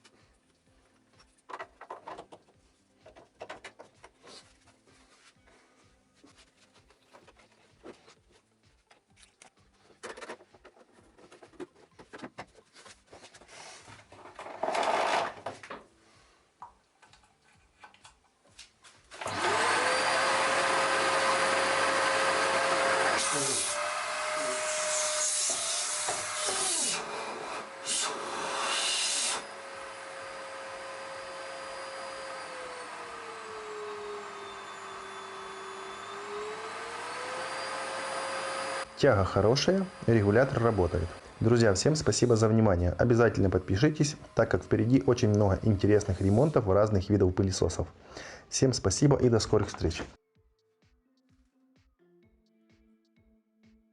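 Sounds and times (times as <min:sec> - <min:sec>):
vacuum cleaner motor whine: 0:19.1 - 0:42.0.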